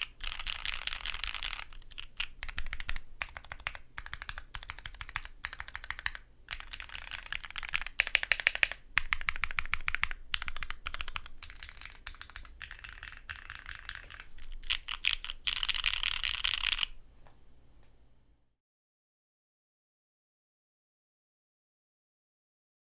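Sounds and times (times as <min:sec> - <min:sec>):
mechanical keyboard typing: 0:00.0 - 0:17.0.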